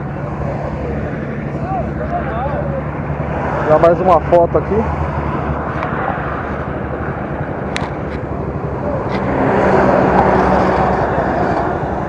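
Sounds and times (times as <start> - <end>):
rushing noise: 0.0 - 12.0
motorcycle engine idling: 3.9 - 9.5.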